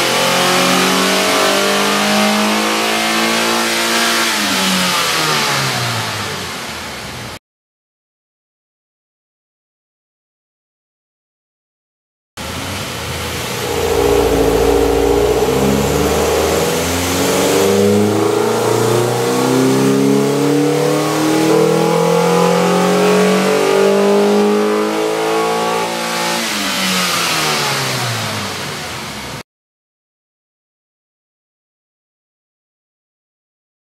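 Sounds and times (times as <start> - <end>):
car engine accelerating: 13.1 - 24.8.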